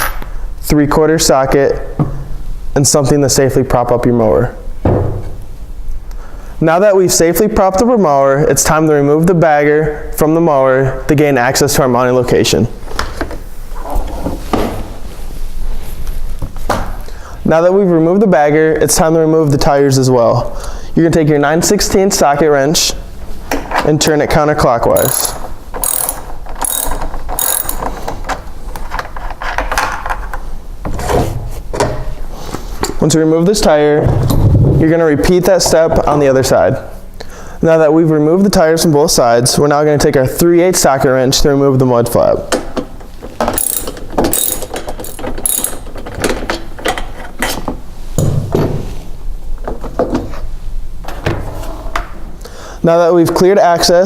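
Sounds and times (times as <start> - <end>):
ratchet wrench clicking: 25.0 - 27.9, 43.6 - 45.9.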